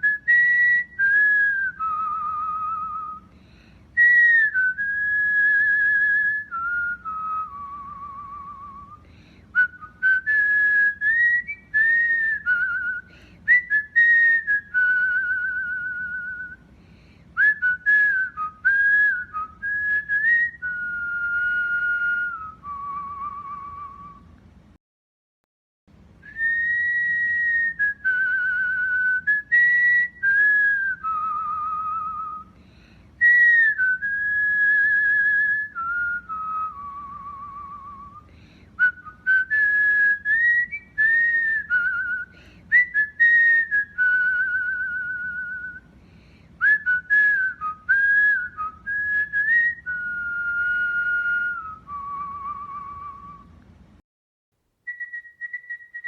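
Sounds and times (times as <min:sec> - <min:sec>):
cockatiel whistling: 0:54.9 - 0:56.0.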